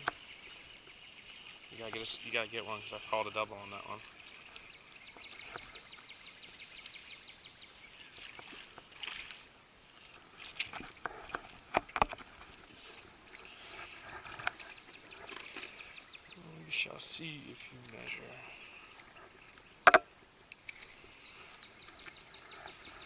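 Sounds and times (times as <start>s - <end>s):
wind and water hiss: 0.0s - 23.0s
sharp clicks and knocks: 19.8s - 20.8s.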